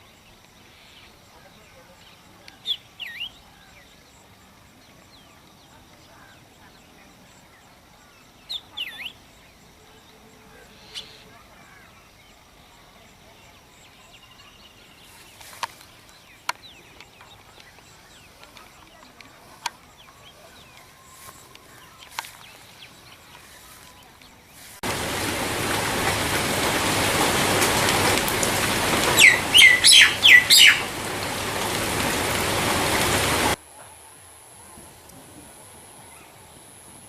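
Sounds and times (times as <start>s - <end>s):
faint bird chirps: 0.1s - 24.6s, 29.1s - 30.9s
loud steady rushing noise: 24.8s - 33.6s
bird giving loud sliding calls: 29.1s - 30.9s.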